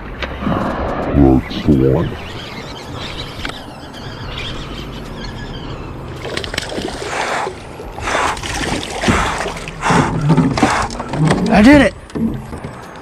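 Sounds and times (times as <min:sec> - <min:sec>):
short water splashes: 0:06.2 - 0:11.2
water trickling over rush: 0:06.2 - 0:11.6.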